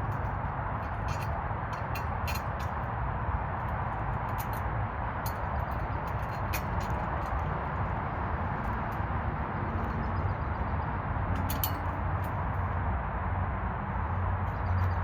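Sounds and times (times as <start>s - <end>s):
light clicks and clinks: 0.1s - 2.9s, 3.6s - 7.9s, 11.4s - 12.4s.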